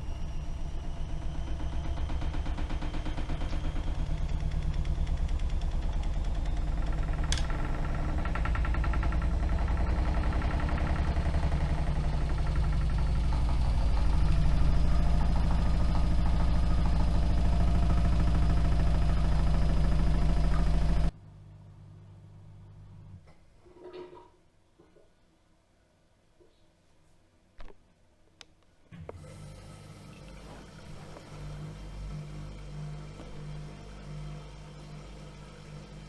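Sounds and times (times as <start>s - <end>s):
washing machine motor whine: 0.0s - 21.2s, 28.9s - 36.0s
washing machine drum rumble: 0.1s - 21.1s.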